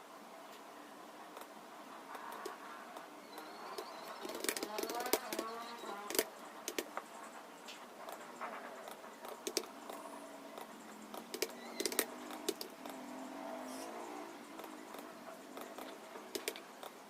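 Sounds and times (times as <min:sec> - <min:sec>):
keyboard keys clicking: 0:03.4 - 0:06.9, 0:09.3 - 0:10.0, 0:10.6 - 0:13.0, 0:14.6 - 0:17.0.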